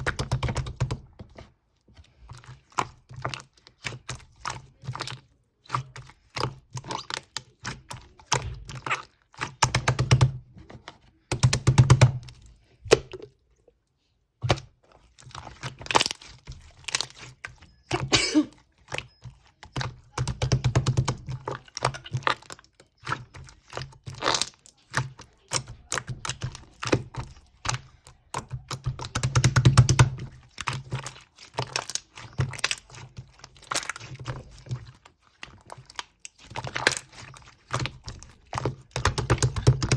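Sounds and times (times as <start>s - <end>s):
slime squished by hand: 14.4s - 39.9s.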